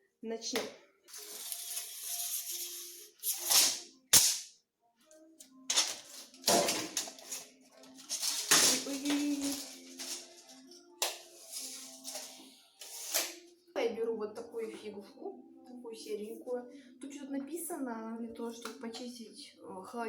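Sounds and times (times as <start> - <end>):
background music: 0.0 - 20.0.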